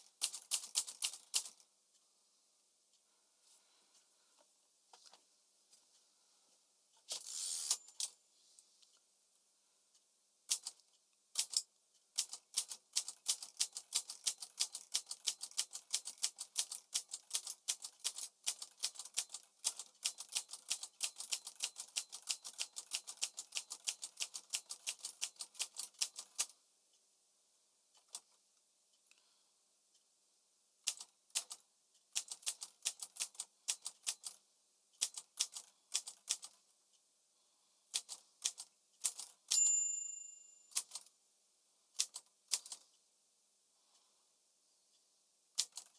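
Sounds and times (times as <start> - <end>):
typewriter keystrokes: 0.2 - 1.6, 10.5 - 10.8, 11.4 - 26.5, 40.7 - 41.1, 45.6 - 45.9.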